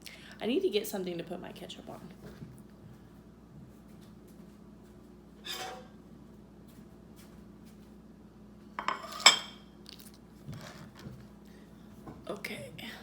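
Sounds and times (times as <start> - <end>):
dish scraping: 5.4 - 6.0, 8.8 - 9.6
dishes and cutlery clinking: 8.8 - 9.6.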